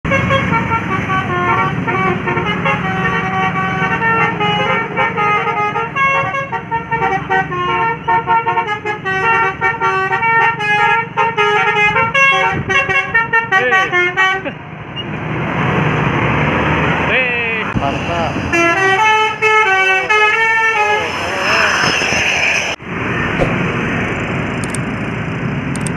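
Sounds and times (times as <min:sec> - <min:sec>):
bus horn playing a melody: 0:00.1 - 0:14.6, 0:18.5 - 0:21.2
rising rush of noise: 0:20.7 - 0:25.3.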